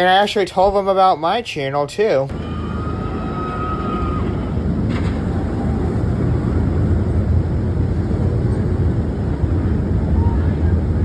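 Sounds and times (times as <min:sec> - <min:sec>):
roller coaster train rumbling: 0:02.3 - 0:11.0
wind rushing over microphone: 0:02.3 - 0:11.0.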